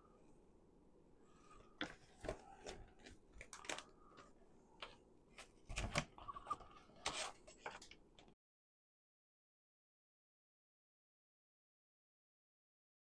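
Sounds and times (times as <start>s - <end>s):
plastic parts clicking and rustling: 1.6s - 8.4s.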